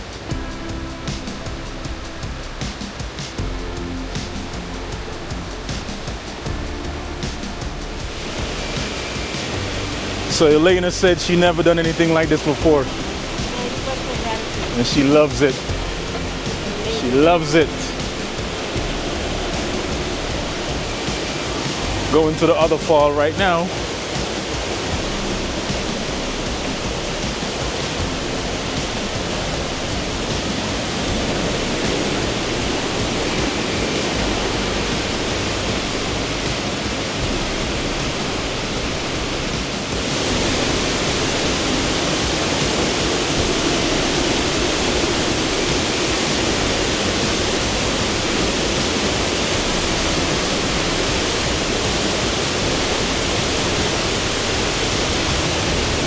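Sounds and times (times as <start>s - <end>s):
waterfall roaring: 0.0s - 56.0s.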